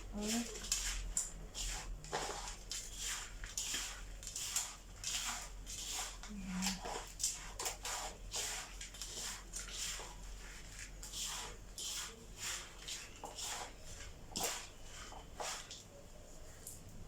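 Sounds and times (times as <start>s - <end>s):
oats stirred in a bowl: 0.0s - 17.0s.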